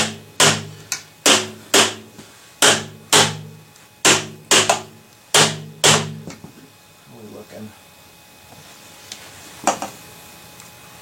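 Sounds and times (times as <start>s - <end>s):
hammer striking plastic pipe joints: 0.0s - 6.4s.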